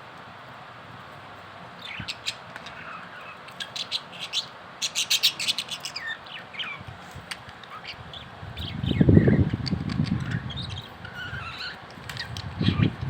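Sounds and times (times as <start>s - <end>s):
budgerigars chirping: 1.8s - 6.9s, 7.7s - 13.0s.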